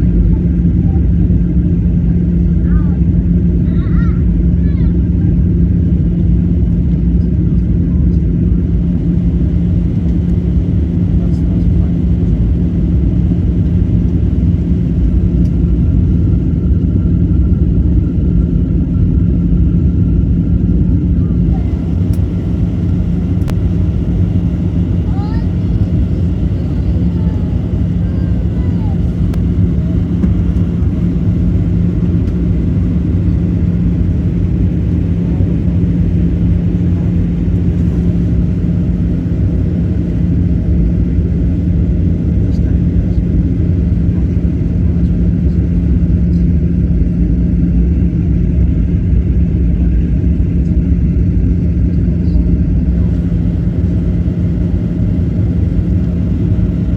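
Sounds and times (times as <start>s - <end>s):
airliner engines rumbling: 0.0s - 56.9s
constant low hum: 0.0s - 56.9s.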